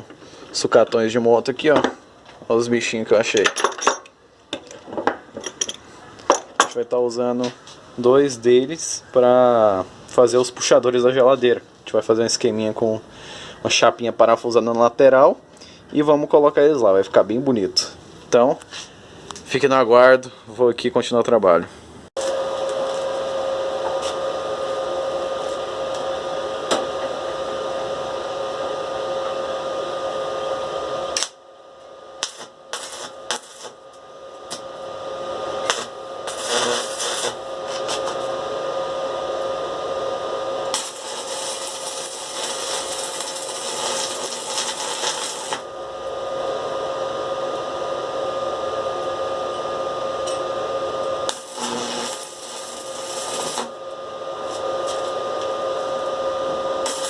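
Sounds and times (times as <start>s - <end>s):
power tool motor whining: 35.6s - 38.3s, 51.0s - 53.8s.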